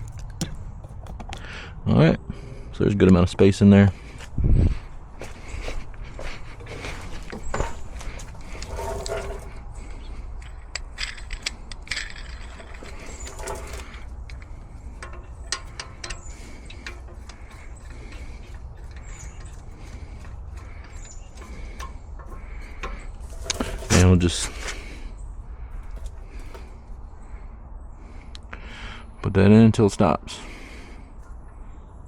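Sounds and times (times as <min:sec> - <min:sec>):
steady low hum: 0:00.0 - 0:29.3
hand tools clinking: 0:05.2 - 0:25.0.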